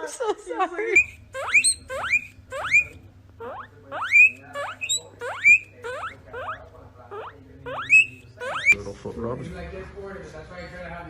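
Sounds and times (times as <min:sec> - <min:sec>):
small animal squeaking: 0:01.0 - 0:08.8.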